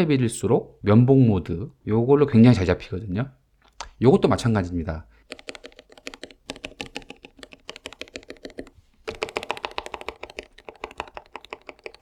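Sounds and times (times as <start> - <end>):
keyboard typing clicks: 5.3 - 12.0.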